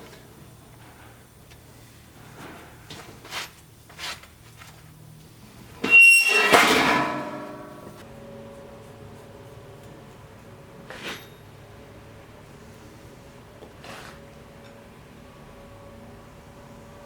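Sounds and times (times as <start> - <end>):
ringing metallic clang: 5.8 - 8.0.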